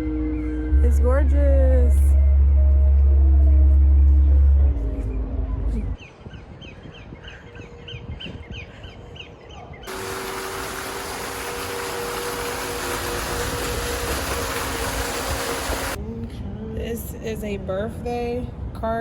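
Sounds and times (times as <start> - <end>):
birds chirping: 6.0 - 16.0
steady rushing noise: 9.9 - 16.0
faint steady hum: 9.9 - 16.1.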